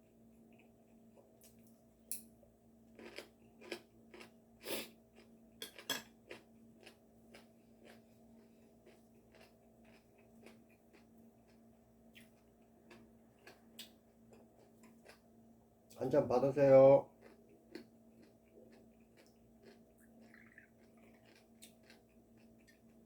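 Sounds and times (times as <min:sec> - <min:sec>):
faint low hum: 0:00.0 - 0:23.0
tableware clicks and crackles: 0:05.6 - 0:06.2.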